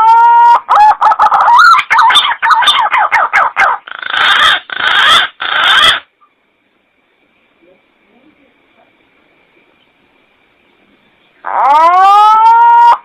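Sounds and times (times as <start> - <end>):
pigeon calling: 0.0 - 6.1, 11.4 - 13.0.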